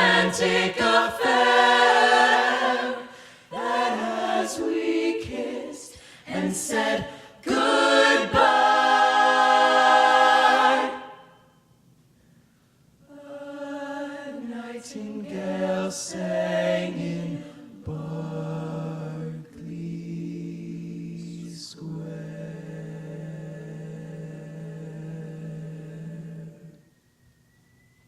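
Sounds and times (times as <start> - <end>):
a cappella group singing: 0.0 - 11.5, 13.0 - 26.9.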